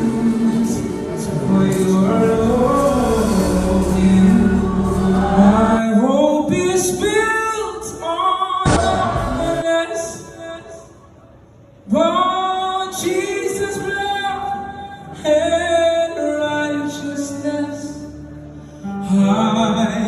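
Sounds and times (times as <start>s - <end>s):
voices singing a hymn: 0.0s - 7.3s.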